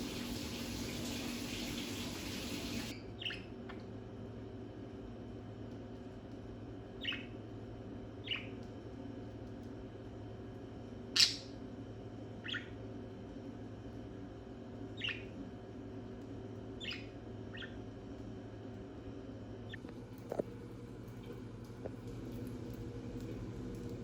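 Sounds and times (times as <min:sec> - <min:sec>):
steady low hum: 0:00.0 - 0:24.0
budgerigar chirping: 0:12.4 - 0:12.7, 0:15.0 - 0:15.3, 0:16.8 - 0:17.8.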